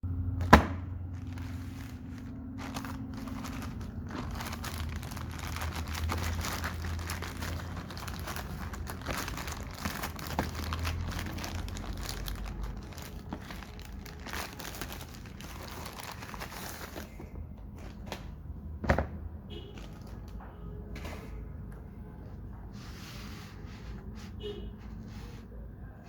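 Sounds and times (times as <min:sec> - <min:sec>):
packaging crinkling: 0:00.4 - 0:17.3.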